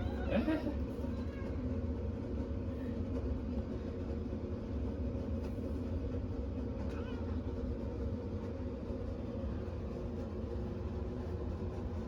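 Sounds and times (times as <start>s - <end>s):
low mechanical hum: 0.0s - 12.0s.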